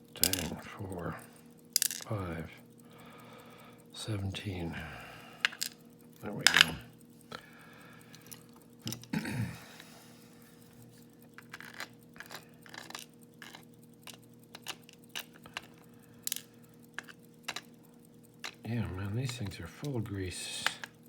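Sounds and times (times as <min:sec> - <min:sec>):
metallic clicks of lock pins and tools: 0:00.1 - 0:00.6, 0:05.4 - 0:07.0, 0:08.0 - 0:09.2, 0:10.8 - 0:21.0.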